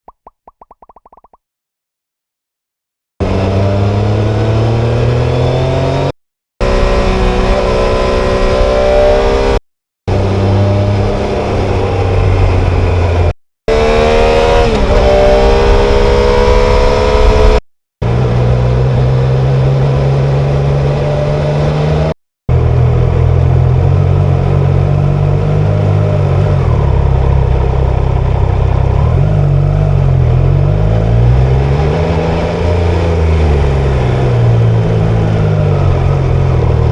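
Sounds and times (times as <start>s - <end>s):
motorcycle engine revving: 3.2s - 36.9s.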